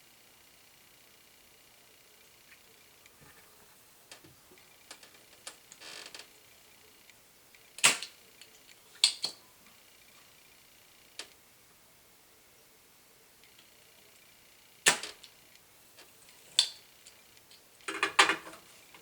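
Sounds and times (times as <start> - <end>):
loud snaps: 7.8 - 8.2, 9.0 - 9.4, 14.9 - 15.2
tools clicking and tapping: 17.9 - 18.6.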